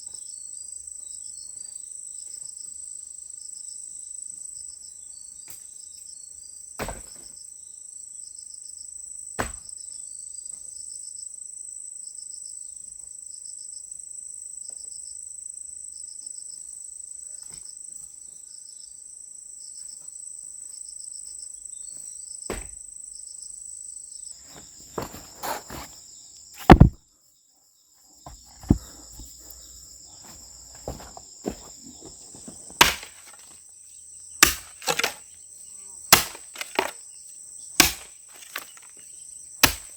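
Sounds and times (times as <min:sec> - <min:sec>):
insects chirring: 0:00.0 - 0:39.9
sharp knocks and thuds: 0:06.8 - 0:07.2, 0:09.4 - 0:09.6, 0:22.5 - 0:22.8, 0:24.5 - 0:25.9, 0:26.6 - 0:27.0, 0:28.3 - 0:29.6, 0:30.2 - 0:33.5, 0:34.4 - 0:35.2, 0:36.1 - 0:37.0, 0:37.8 - 0:38.9, 0:39.6 - 0:39.9.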